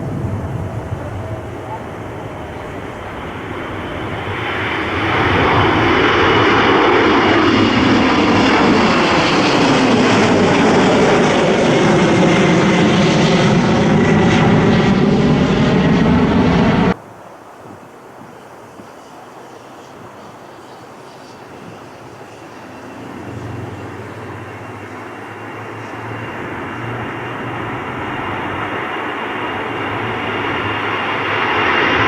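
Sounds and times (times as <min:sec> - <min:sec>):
airliner passing close by: 0:00.0 - 0:17.0, 0:18.6 - 0:32.0
high falling engine tone: 0:00.0 - 0:17.0.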